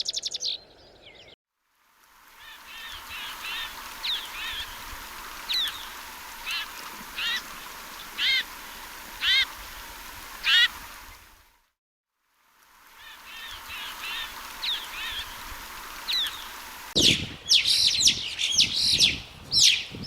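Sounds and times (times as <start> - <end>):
bird giving harsh calls: 8.2 - 8.5, 9.2 - 9.5, 10.4 - 10.7.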